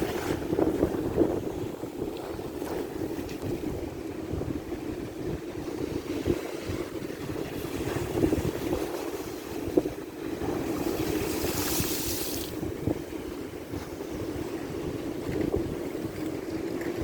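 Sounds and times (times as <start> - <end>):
ocean waves washing in: 0.0 - 17.0
wind rumbling on microphone: 0.0 - 17.0
hissing rush of surf: 11.2 - 12.6.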